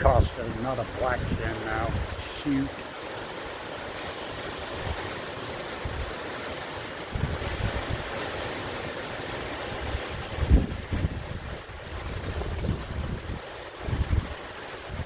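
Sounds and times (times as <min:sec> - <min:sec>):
wind buffeting microphone: 0:00.0 - 0:02.7, 0:04.4 - 0:06.2, 0:07.0 - 0:08.3, 0:09.6 - 0:15.0
steady outdoor hiss: 0:00.0 - 0:15.0.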